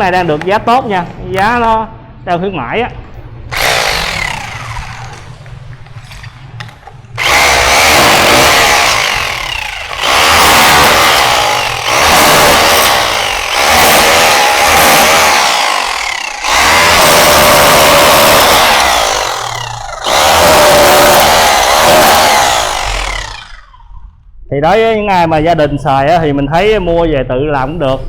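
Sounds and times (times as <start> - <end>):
rotary hammer chiselling tile: 6.0 - 23.5.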